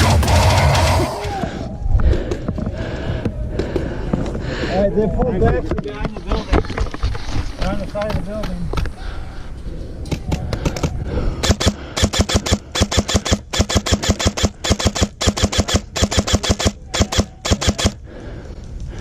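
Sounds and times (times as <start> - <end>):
airsoft rifle firing bursts: 11.4 - 18.0.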